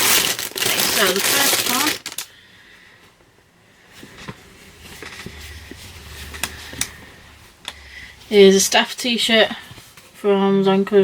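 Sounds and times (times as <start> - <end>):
packaging rustling: 0.0 - 2.3
low hum: 4.0 - 8.4.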